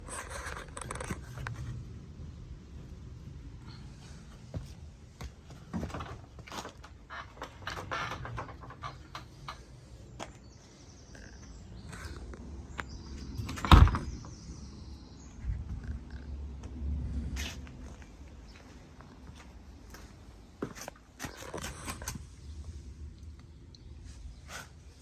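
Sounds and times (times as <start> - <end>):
garage door on rollers: 5.7 - 9.8.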